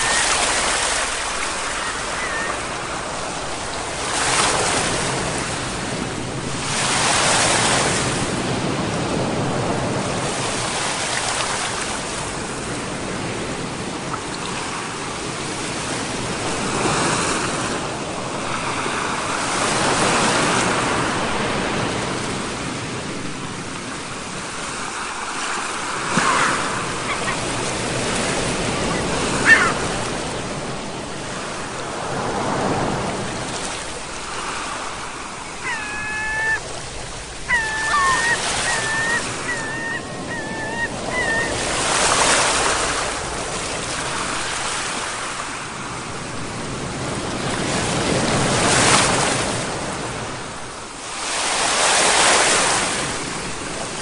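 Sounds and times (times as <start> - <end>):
waves breaking and washing in: 0.0 - 54.0
high squeaks: 37.5 - 41.6.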